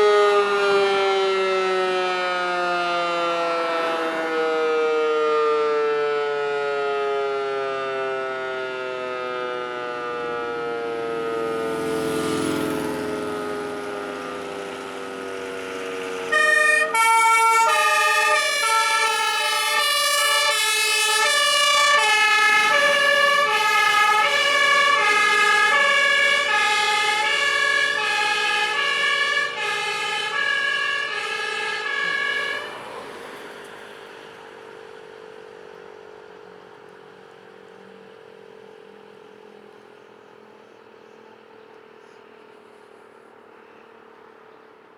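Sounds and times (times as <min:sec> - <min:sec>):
alarm siren winding down: 0:00.0 - 0:34.3
fire engine two-tone siren: 0:00.0 - 0:42.0.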